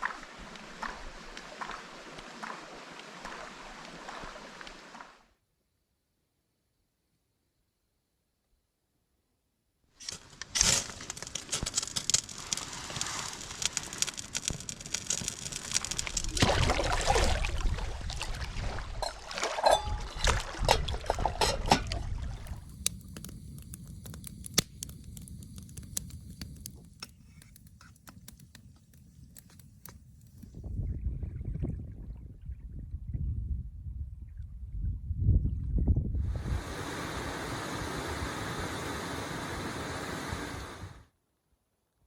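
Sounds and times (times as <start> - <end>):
water splashing and pattering: 0.0 - 5.3, 10.9 - 30.6.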